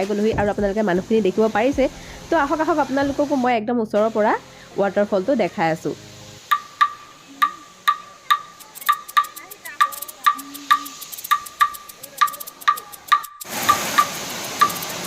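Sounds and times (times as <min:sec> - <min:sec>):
background music with ticking beat: 0:00.0 - 0:03.3, 0:06.4 - 0:15.0
waterfall rushing: 0:04.1 - 0:15.0.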